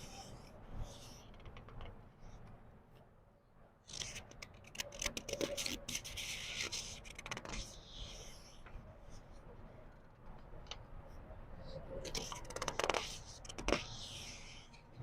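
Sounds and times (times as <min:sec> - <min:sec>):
book page turning: 0:12.1 - 0:14.6.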